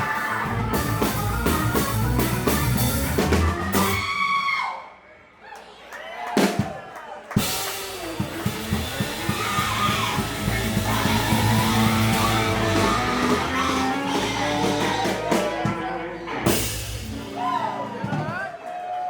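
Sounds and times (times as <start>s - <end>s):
funk band playing: 0.0s - 4.2s, 7.4s - 18.4s
drum hits: 16.5s - 18.4s.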